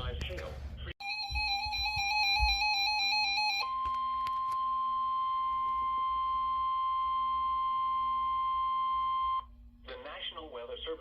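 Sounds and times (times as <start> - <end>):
steady high alarm tone: 1.0 - 9.5.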